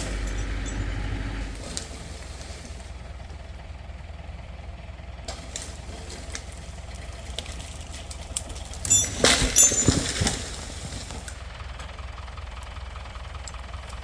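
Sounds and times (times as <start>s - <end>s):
tractor engine idling: 0.0s - 14.0s.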